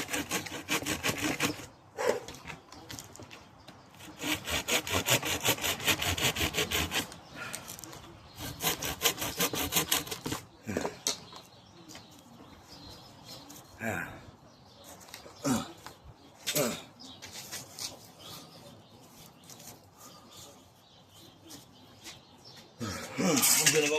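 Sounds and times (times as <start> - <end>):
saw cutting through log: 0.0 - 1.7, 4.0 - 7.2, 8.4 - 10.4.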